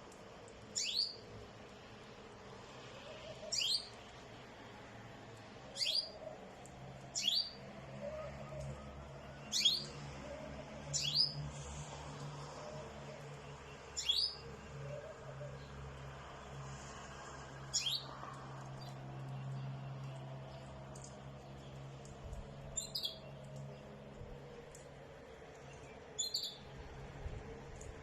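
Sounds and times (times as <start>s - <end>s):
bird chirping: 0.8s - 1.2s, 3.5s - 4.0s, 5.7s - 6.2s, 7.2s - 7.6s, 9.5s - 9.9s, 10.9s - 11.4s, 13.9s - 14.4s, 17.8s - 18.1s, 22.7s - 23.8s, 25.7s - 26.7s.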